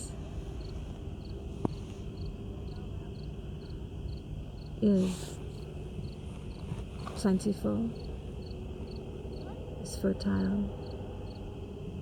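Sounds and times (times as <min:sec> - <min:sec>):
crickets chirping: 0:00.0 - 0:12.0
woman's voice: 0:04.8 - 0:05.4, 0:07.2 - 0:08.0, 0:09.8 - 0:10.8.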